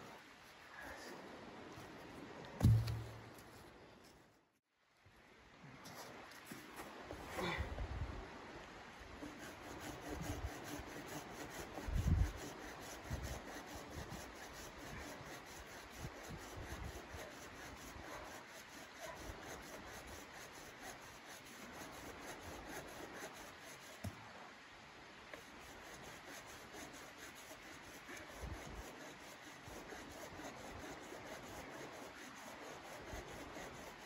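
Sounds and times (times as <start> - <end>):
dull low thumps: 2.6 - 3.3.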